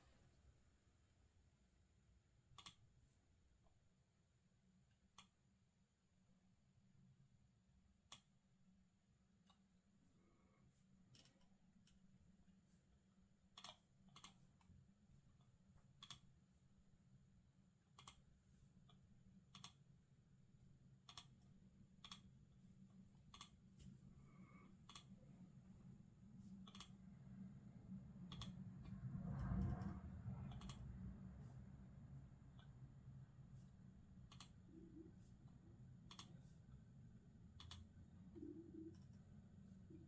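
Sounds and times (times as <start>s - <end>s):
keyboard and mouse clicks: 2.6s - 2.8s, 26.7s - 27.0s, 30.5s - 30.9s, 34.3s - 34.6s, 36.1s - 36.4s
low rumble: 28.7s - 32.4s.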